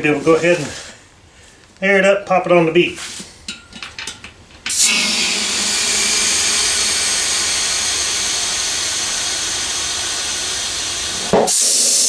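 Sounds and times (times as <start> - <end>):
compressed air hissing into tyre: 4.7 - 12.0.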